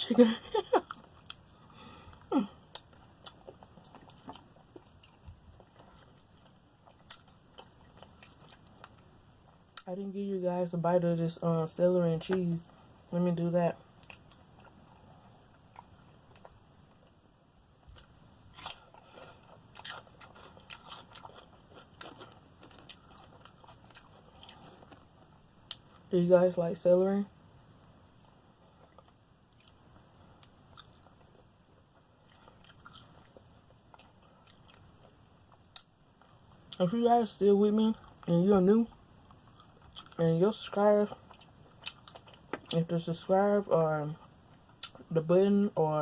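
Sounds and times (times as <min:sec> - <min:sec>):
crunching bites of celery: 0:17.9 - 0:25.1.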